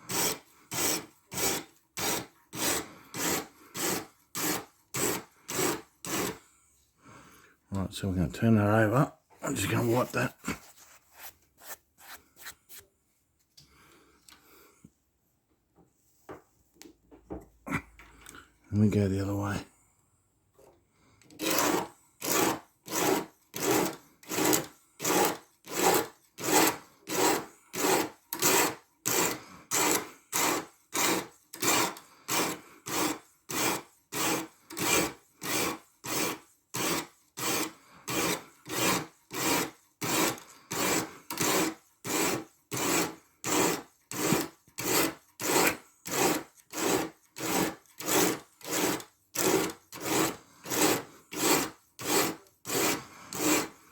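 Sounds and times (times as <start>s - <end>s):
sharpening stone rasping on blade: 0.0s - 6.4s, 21.4s - 53.8s.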